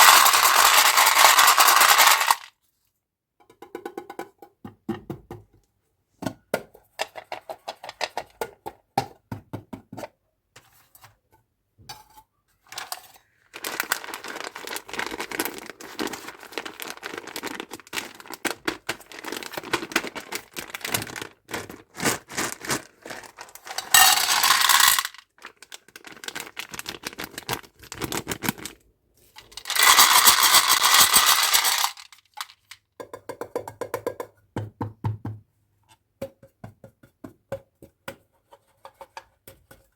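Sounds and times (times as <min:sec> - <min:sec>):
plastic packaging crackling: 0:13.5 - 0:28.8, 0:29.6 - 0:32.5.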